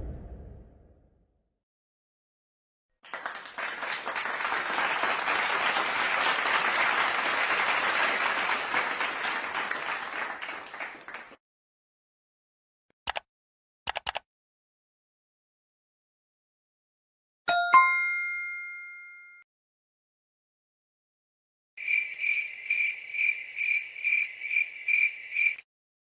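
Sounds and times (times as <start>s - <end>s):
crowd applause: 3.0s - 11.4s
computer mouse clicks: 13.0s - 13.2s, 13.9s - 14.2s.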